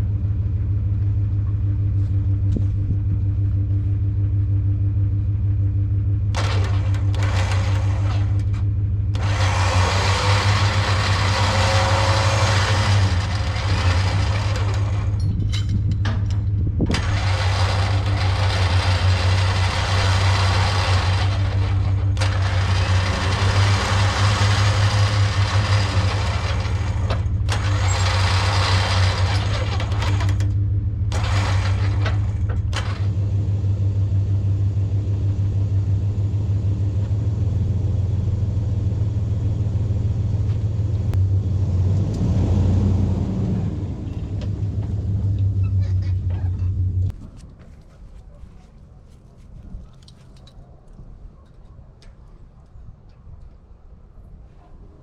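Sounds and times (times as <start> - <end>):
sawmill engine running: 0.0 - 48.1
band blade sawing through log: 9.2 - 15.2, 16.9 - 30.4.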